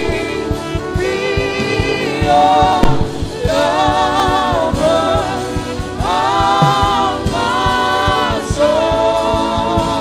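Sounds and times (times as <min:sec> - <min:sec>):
voices singing with vibrato: 0:00.0 - 0:10.0
steady beat: 0:06.4 - 0:07.7.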